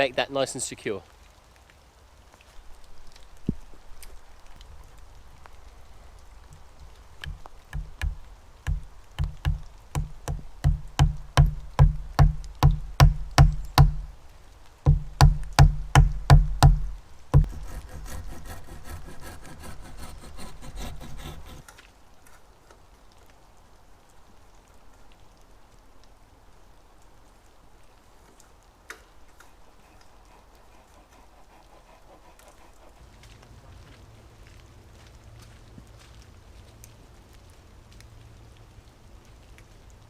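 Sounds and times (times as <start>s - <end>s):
hammer knocking wooden wedge: 7.2s - 14.1s, 14.9s - 17.8s
saw rasping through wood: 14.9s - 21.6s.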